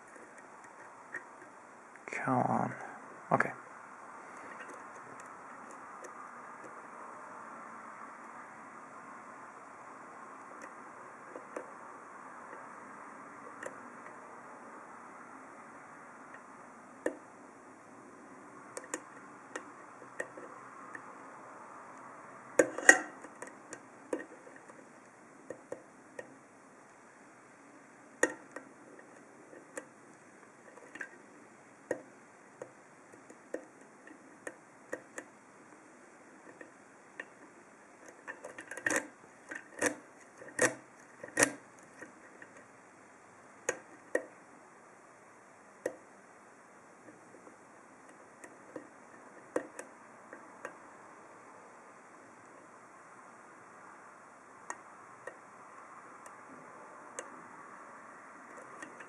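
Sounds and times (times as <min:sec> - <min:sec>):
lock picking metallic clicks: 0:38.0 - 0:42.6.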